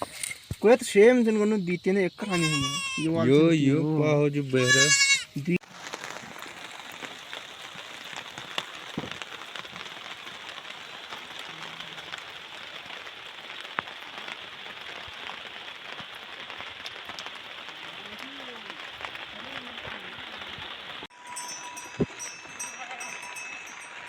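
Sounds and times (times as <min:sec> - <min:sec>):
steady rain falling: 0:00.0 - 0:24.0.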